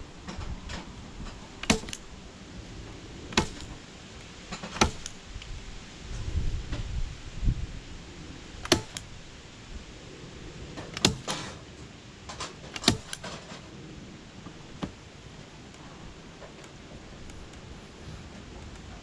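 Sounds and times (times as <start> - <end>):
sharp knocks and clicks: 0.3 - 2.0, 3.3 - 3.8, 4.5 - 5.2, 8.6 - 9.1, 10.8 - 11.6, 12.3 - 13.5.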